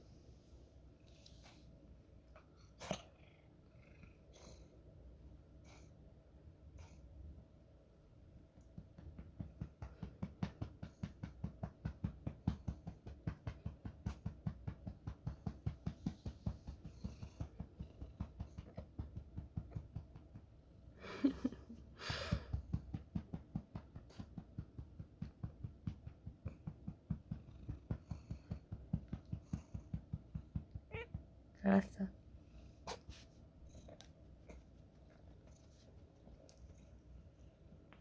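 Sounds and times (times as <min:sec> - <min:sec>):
cat purring: 0:02.4 - 0:04.8, 0:08.6 - 0:20.6, 0:21.2 - 0:31.4.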